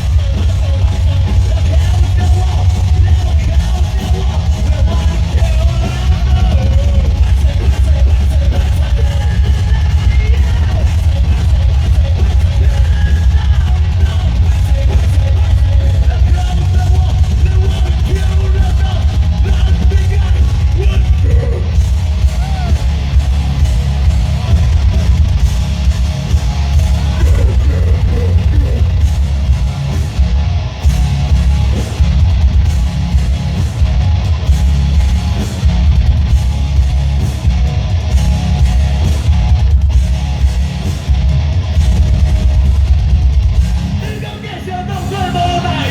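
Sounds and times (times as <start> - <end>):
live rock band: 0.0 - 45.9
person singing: 27.1 - 29.0, 44.0 - 45.9.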